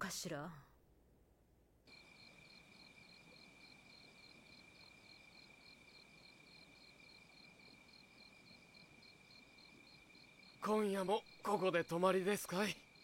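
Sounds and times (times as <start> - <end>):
crickets chirping: 1.9 - 13.0.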